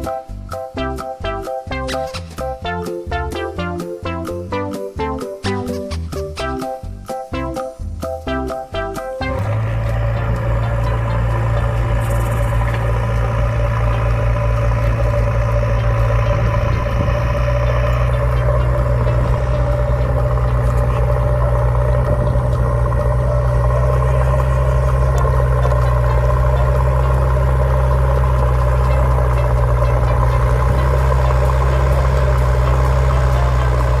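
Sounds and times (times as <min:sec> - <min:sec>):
engine idling: 0:01.8 - 0:34.0.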